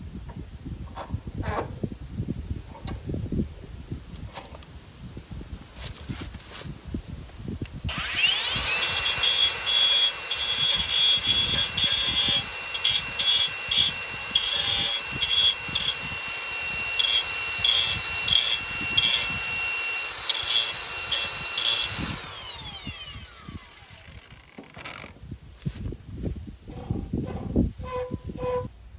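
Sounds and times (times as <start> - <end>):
high-speed power tool whining: 7.9 - 25.2.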